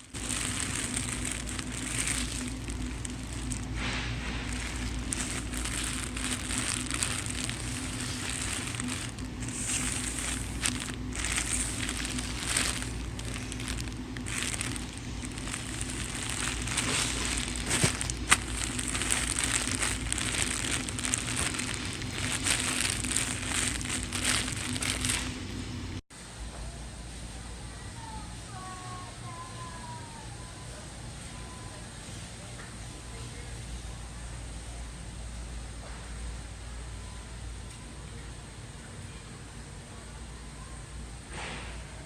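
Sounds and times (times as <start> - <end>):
crinkling and crackling: 0.0 - 26.0
steady low hum: 0.0 - 26.4.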